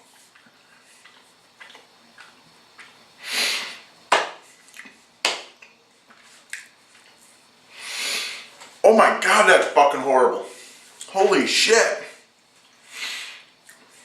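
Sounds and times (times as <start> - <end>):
wet mouth clicks and smacks: 4.7 - 7.2.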